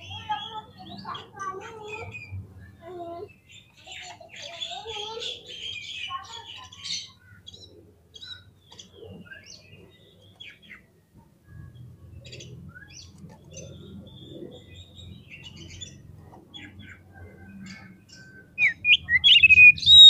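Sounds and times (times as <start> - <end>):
bird singing rapid chirps: 11.6 - 20.0.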